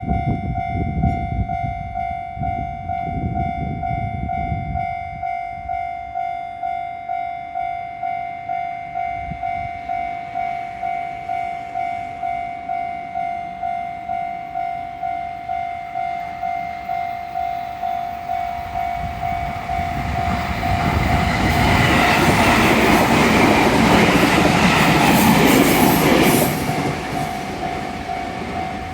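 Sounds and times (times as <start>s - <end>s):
level-crossing bell ringing: 0.1s - 28.9s
train wheels rumbling on rails: 18.2s - 28.9s.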